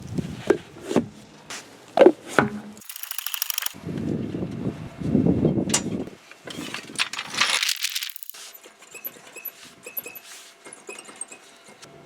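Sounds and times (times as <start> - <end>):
small objects clicking and clinking: 2.8 - 3.8, 7.0 - 8.4.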